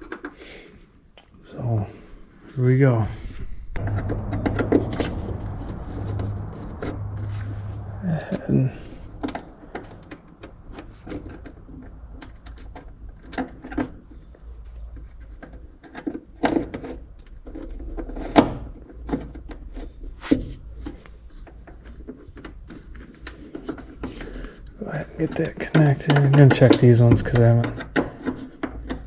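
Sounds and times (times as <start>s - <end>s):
faint low hum: 2.9s - 13.4s.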